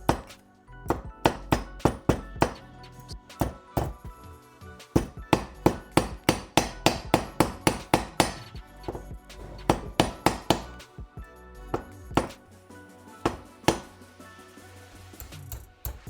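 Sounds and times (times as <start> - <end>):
hammer striking metal: 0.0 - 2.7, 3.4 - 4.0, 5.0 - 10.8, 11.8 - 12.4, 13.3 - 14.0.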